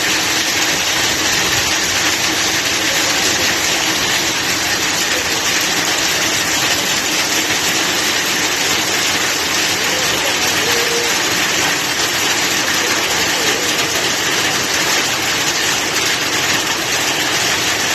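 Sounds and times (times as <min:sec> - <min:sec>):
floodwater rushing: 0:00.0 - 0:17.9.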